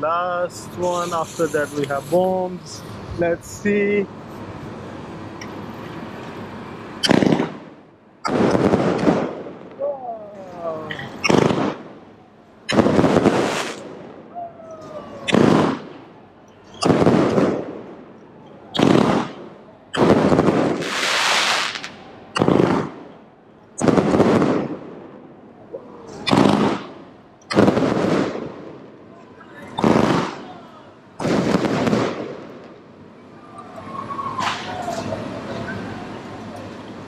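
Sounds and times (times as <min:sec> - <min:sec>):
faint firework whistles: 0:00.8 - 0:02.2, 0:12.7 - 0:17.7, 0:18.7 - 0:23.0, 0:25.8 - 0:27.0, 0:33.3 - 0:36.4
fireworks bangs: 0:06.9 - 0:10.0, 0:11.1 - 0:18.1, 0:18.7 - 0:23.2, 0:23.8 - 0:25.3, 0:26.0 - 0:33.0.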